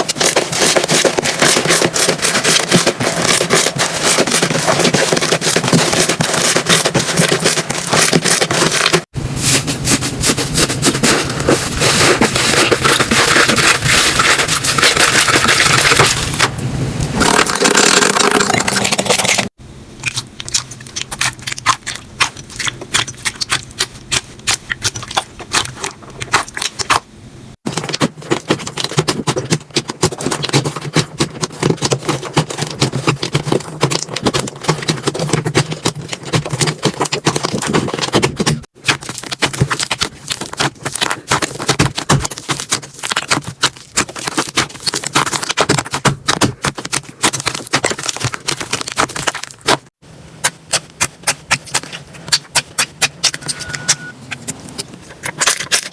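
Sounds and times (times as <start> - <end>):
slime crackling and popping: 17.2 - 53.4.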